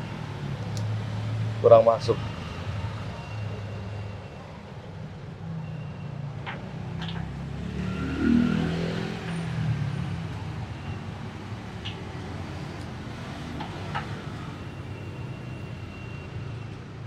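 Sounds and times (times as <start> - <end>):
motor vehicle passing: 6.9 - 10.3.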